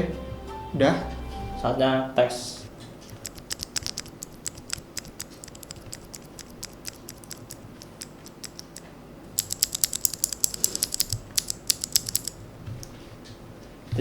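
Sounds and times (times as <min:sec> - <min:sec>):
mechanical keyboard clicking: 0:03.1 - 0:12.9.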